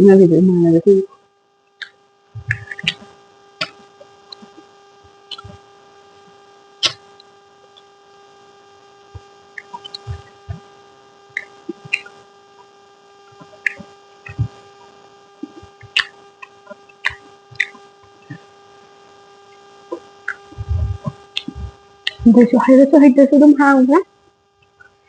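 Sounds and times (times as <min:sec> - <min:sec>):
electrical hum: 0:00.0 - 0:25.0
mouth clicks: 0:01.8 - 0:04.5, 0:05.3 - 0:05.6, 0:06.8 - 0:07.1, 0:11.3 - 0:12.2, 0:15.4 - 0:18.5, 0:19.9 - 0:22.7.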